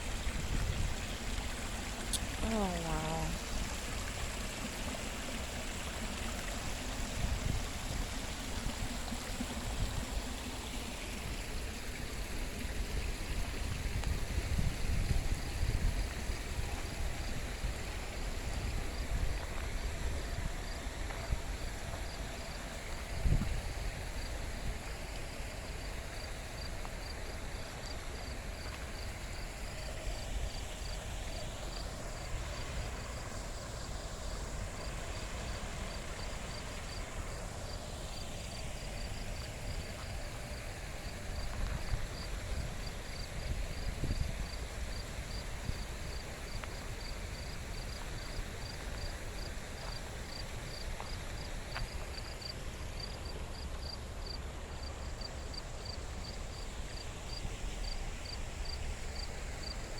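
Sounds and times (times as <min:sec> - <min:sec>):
cricket chirping: 0:25.0 - 0:59.9.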